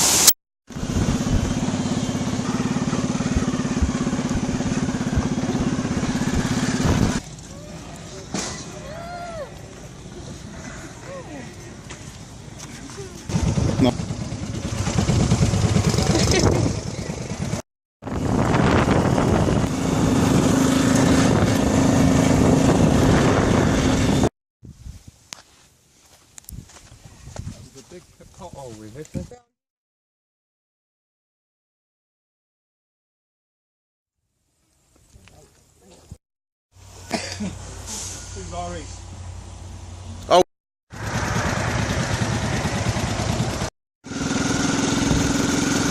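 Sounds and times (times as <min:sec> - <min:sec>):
motorbike engine running: 0:00.8 - 0:07.2, 0:13.3 - 0:24.3, 0:41.0 - 0:45.9
wind buffeting microphone: 0:18.0 - 0:25.2, 0:26.5 - 0:29.5.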